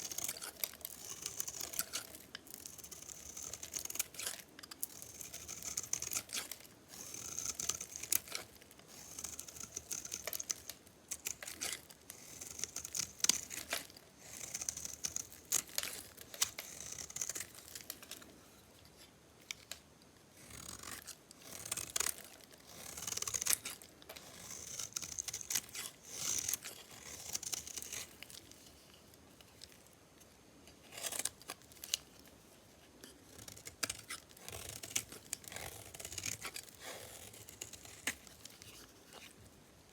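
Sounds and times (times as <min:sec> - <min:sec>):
knife slicing hard soap: 0:00.0 - 0:18.2.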